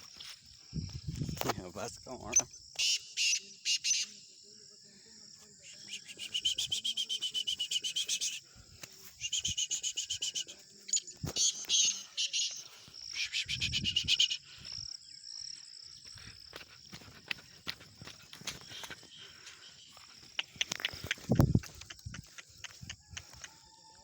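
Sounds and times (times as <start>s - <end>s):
high insect drone: 0.0s - 24.0s
partridge calling: 2.2s - 4.2s, 9.2s - 14.6s
rapid chattering bird notes: 20.2s - 23.3s.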